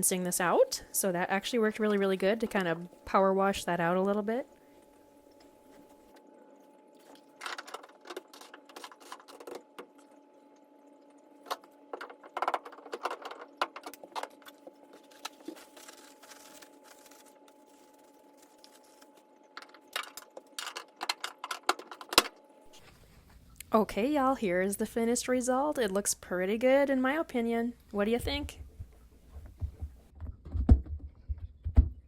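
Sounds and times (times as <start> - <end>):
steady low hum: 0.0 - 32.0
clicks and clatter of hands working: 19.6 - 22.3.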